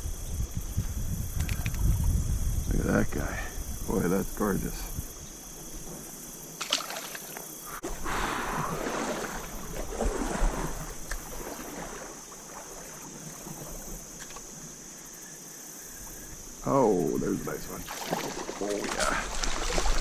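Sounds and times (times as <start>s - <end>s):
high insect buzz: 0.0s - 20.0s
water splashing and sloshing: 3.1s - 20.0s.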